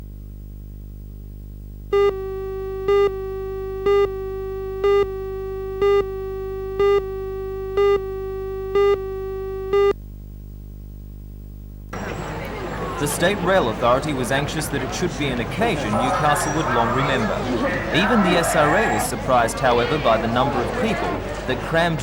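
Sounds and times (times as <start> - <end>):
buzzy electronic line-up tone: 1.9 - 9.9.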